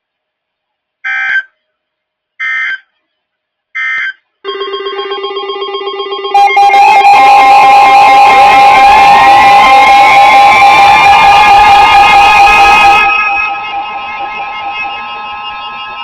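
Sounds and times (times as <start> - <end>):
digital data tone bursts: 4.5 - 16.0
fast-pulsing ringing tone: 4.5 - 16.0
music: 13.1 - 16.0.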